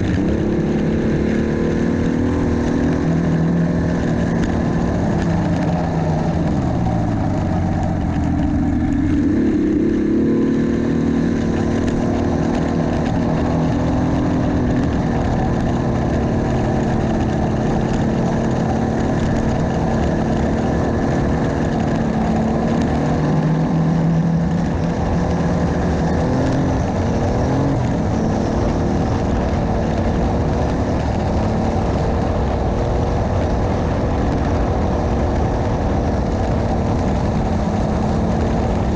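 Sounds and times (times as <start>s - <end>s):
snowmobile engine running: 0.0s - 38.9s.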